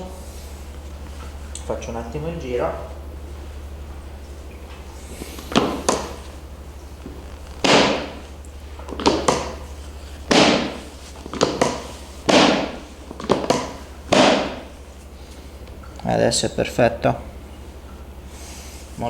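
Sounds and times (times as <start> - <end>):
steady low hum: 0.0 - 19.0
sharp thumps and knocks: 5.4 - 6.4, 7.0 - 14.8.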